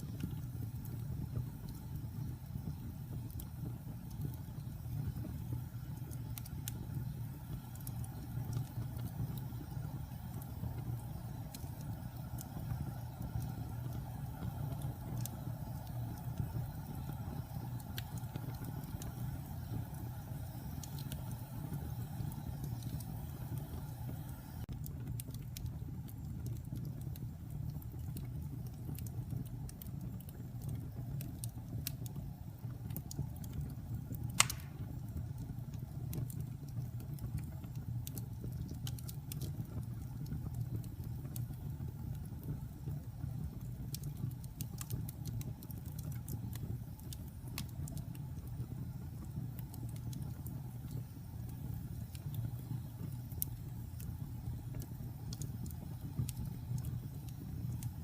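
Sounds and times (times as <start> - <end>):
fire crackles and pops: 0.0 - 58.0
fire rumbling in fireplace: 0.0 - 58.0.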